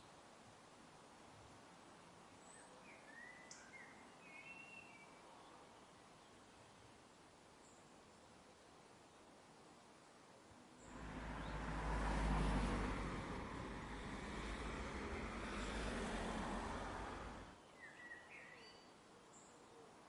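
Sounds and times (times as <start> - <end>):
motor vehicle passing: 10.9 - 17.5.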